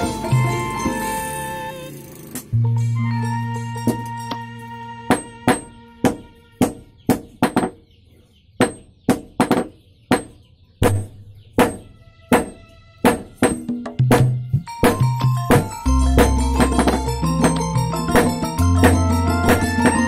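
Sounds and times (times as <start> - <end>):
background music: 0.0 - 7.0, 11.4 - 20.0.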